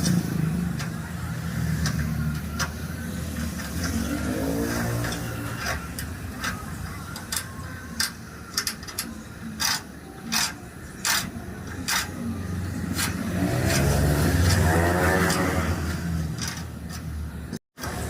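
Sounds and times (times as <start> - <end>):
engine revving up: 0.0 - 5.8, 12.4 - 16.5.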